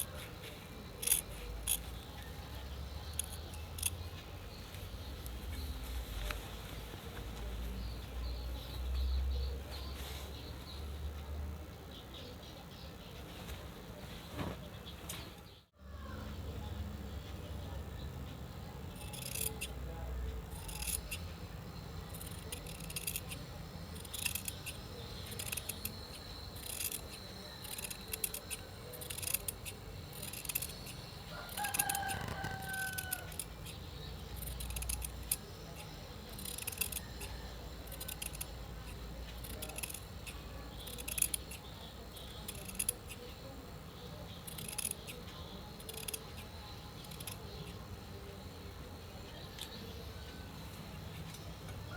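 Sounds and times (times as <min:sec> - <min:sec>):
scissors snipping through cloth: 0:00.0 - 0:02.0, 0:18.9 - 0:19.8, 0:20.4 - 0:43.3, 0:44.4 - 0:47.7
rooster crowing: 0:31.2 - 0:33.6.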